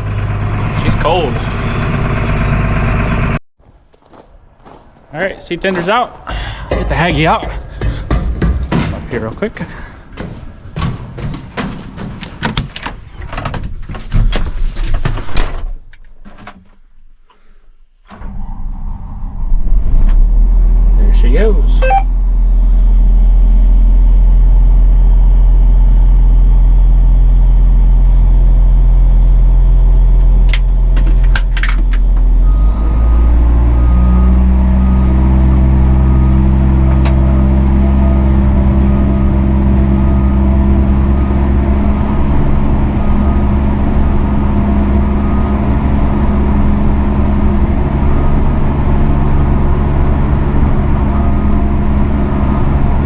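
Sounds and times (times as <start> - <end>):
diesel engine idling and revving: 0.0 - 3.4, 18.3 - 53.0.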